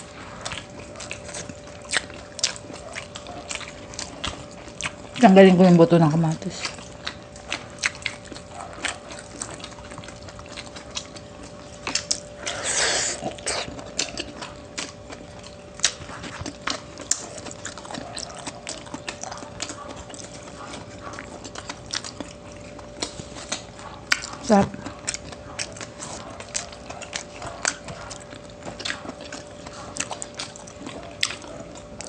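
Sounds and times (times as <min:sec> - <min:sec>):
chewing and mouth sounds: 0:00.0 - 0:32.0
faint steady hum: 0:00.0 - 0:32.0
slurping hiss: 0:12.4 - 0:13.7.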